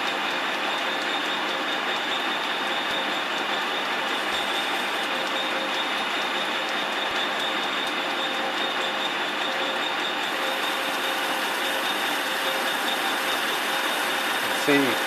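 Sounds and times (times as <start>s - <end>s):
metal lathe whirring: 0.0s - 15.0s
high cutting whine: 4.1s - 15.0s.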